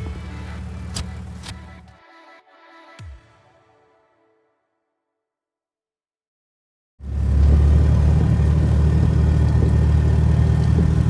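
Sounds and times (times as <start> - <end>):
car engine running: 0.0 - 1.9, 7.0 - 11.0.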